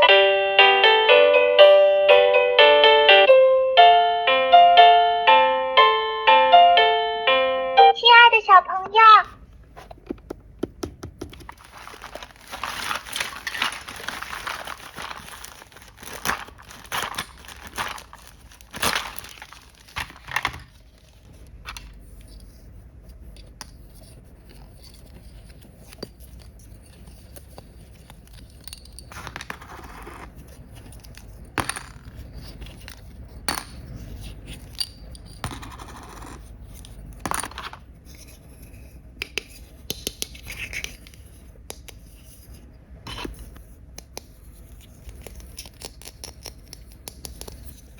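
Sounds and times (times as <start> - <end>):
packaging rustling: 11.2 - 21.3.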